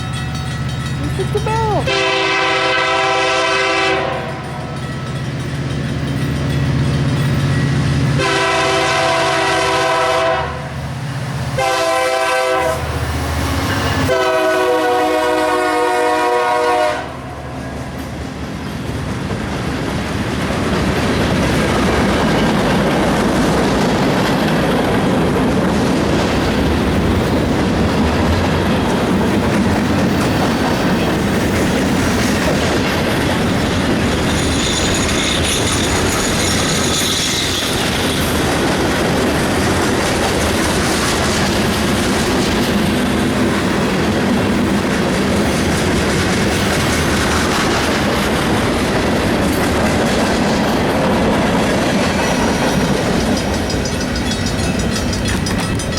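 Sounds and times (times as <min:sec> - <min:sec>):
train wheels clattering on rails: 0:00.0 - 0:16.8, 0:17.6 - 0:55.9
diesel locomotive engine: 0:00.0 - 0:55.9
train air horn blasts: 0:01.8 - 0:04.6, 0:08.2 - 0:10.7, 0:11.6 - 0:12.9, 0:14.1 - 0:17.4.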